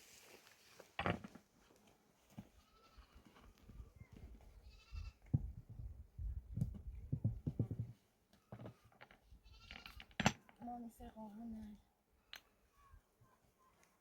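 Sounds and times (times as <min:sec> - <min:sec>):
rustling: 0:00.0 - 0:04.4
livestock bleating: 0:02.6 - 0:03.3, 0:04.6 - 0:05.2, 0:09.4 - 0:10.0.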